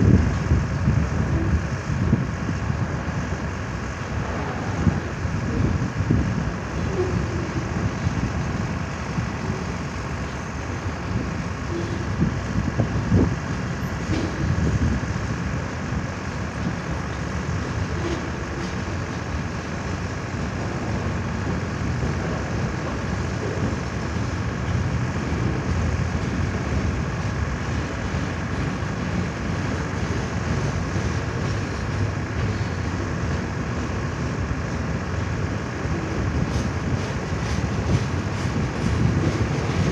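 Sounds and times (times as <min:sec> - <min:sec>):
train rumbling past: 0:00.0 - 0:39.9.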